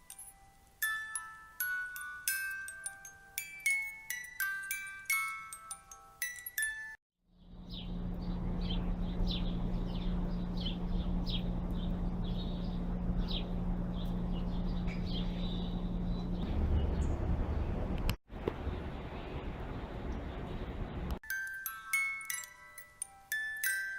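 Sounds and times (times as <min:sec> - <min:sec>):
birds chirping falling calls: 0:07.4 - 0:17.8
steady low hum: 0:07.4 - 0:21.2.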